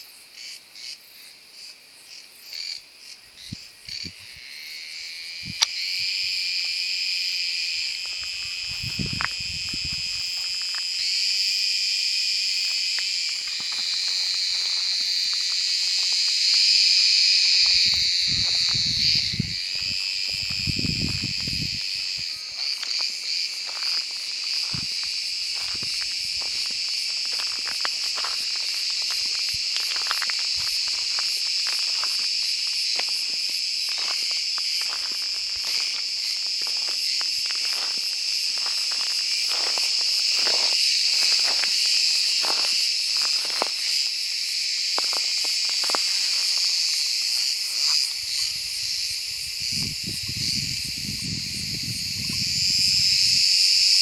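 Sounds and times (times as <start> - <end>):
cicada buzzing drone: 0.0 - 54.0.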